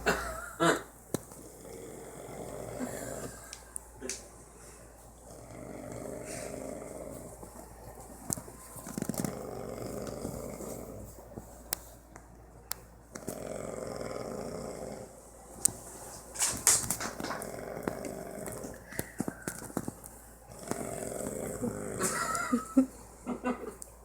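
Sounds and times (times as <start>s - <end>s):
man snoring: 1.4s - 3.4s, 5.3s - 7.2s, 9.3s - 11.0s, 13.4s - 15.1s, 20.5s - 22.7s.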